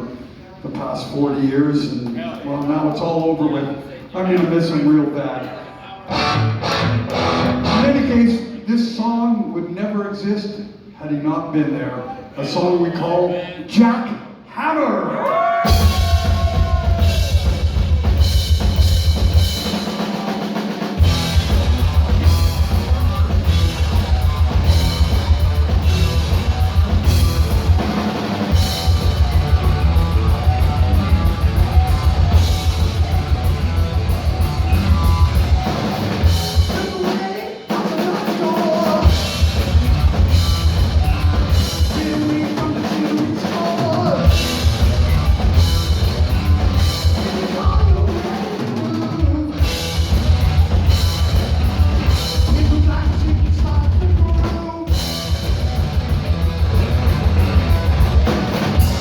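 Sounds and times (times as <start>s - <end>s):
distorted electric guitar: 6.1s - 8.3s, 15.6s - 37.0s, 39.0s - 42.0s, 44.2s - 48.8s, 49.5s - 53.2s, 55.0s - 59.0s
heavy metal band playing live: 6.1s - 8.4s, 15.6s - 59.0s
fast bass drum beat: 15.6s - 59.0s.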